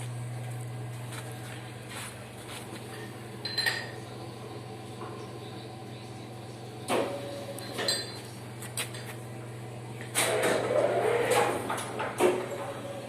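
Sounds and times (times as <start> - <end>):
steady low hum: 0.0 - 13.0
metal clanks and clinks: 2.9 - 4.0, 7.6 - 8.2.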